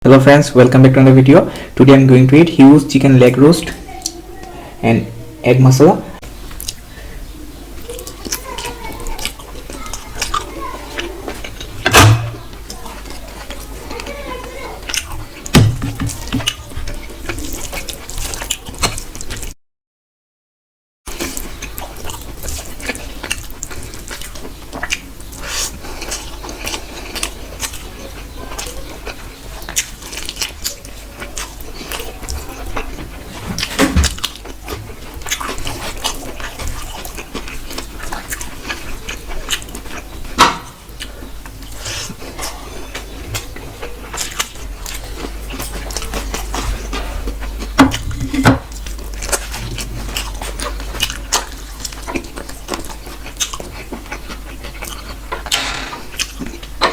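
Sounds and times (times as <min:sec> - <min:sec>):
person chewing food: 0:06.1 - 0:19.6, 0:21.1 - 0:56.9
wet mouth sounds: 0:21.1 - 0:56.7.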